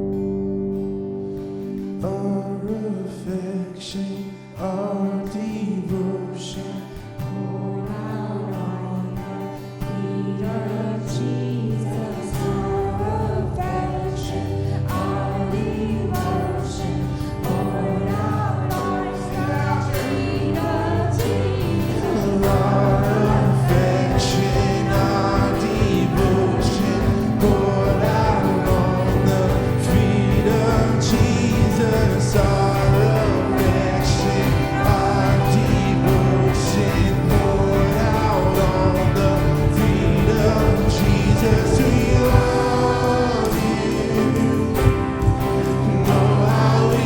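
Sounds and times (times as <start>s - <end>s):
bass guitar: 0.0s - 3.0s, 7.2s - 47.0s
worship band and singers: 1.3s - 47.0s
drums: 12.2s - 47.0s.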